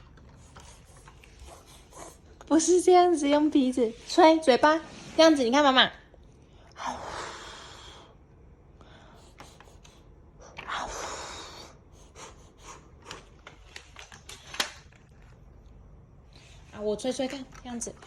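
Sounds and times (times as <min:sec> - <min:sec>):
hard puffs of breath: 0:06.8 - 0:08.2, 0:08.8 - 0:13.3.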